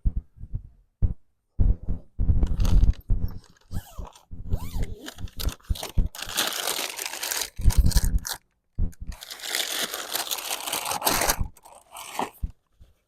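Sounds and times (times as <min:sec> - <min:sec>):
stiff plastic crinkling: 0:02.4 - 0:12.6.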